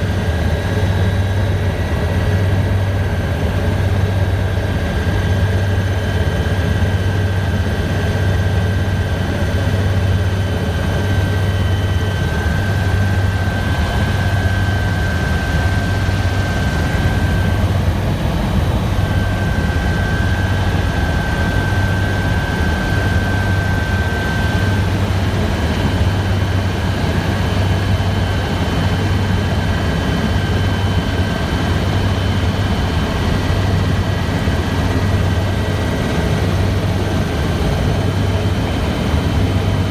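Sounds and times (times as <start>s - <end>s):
helicopter rotor throbbing: 0.0s - 39.9s.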